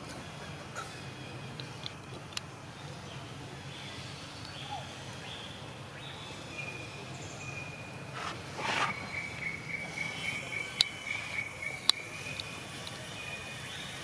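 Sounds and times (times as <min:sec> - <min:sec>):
brief rustle: 0:08.1 - 0:09.1.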